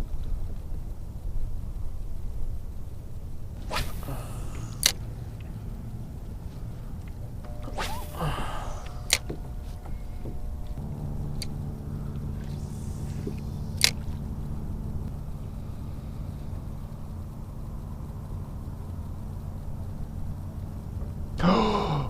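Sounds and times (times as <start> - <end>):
low motor hum: 0.0 - 22.0.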